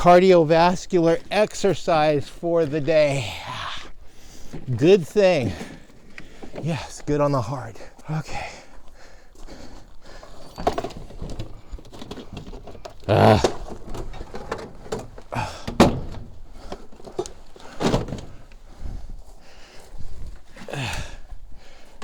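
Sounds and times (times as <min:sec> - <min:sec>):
objects knocking and thudding: 0:10.6 - 0:18.4.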